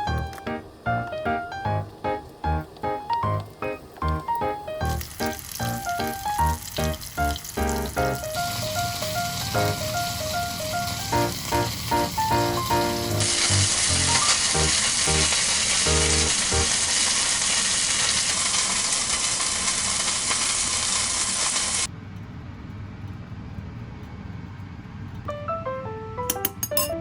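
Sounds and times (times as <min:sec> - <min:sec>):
light background music: 0:00.0 - 0:14.7
faint hiss: 0:00.0 - 0:21.9
food sizzling in a pan: 0:00.0 - 0:21.9.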